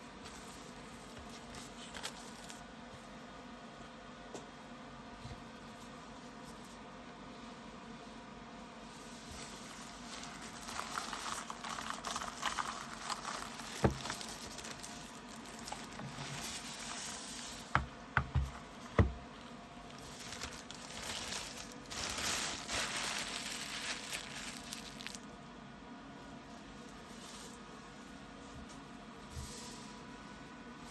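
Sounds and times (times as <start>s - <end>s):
packaging rustling and crinkling: 1.1s - 2.6s, 9.3s - 25.4s.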